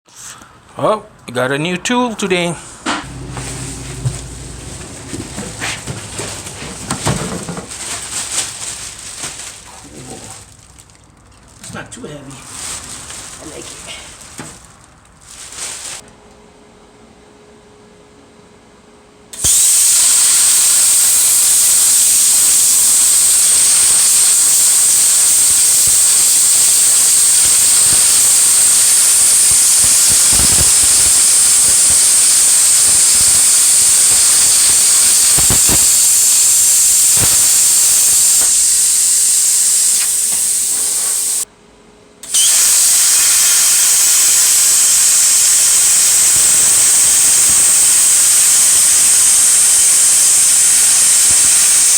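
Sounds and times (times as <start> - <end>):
plasma cutter hissing: 3.0 - 7.2, 19.4 - 41.4, 42.2 - 51.9.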